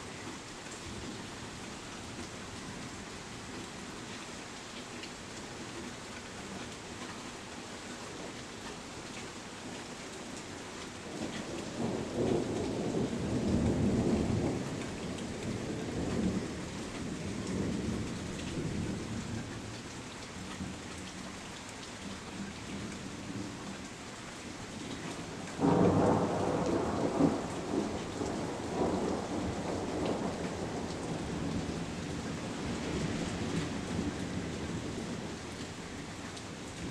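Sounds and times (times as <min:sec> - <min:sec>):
steady rain falling: 0:00.0 - 0:36.9
thunder rumbling: 0:25.6 - 0:35.4.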